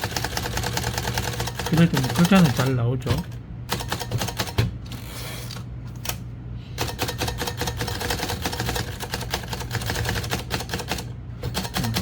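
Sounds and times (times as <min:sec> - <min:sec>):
manual typewriter clacking: 0:06.8 - 0:12.0.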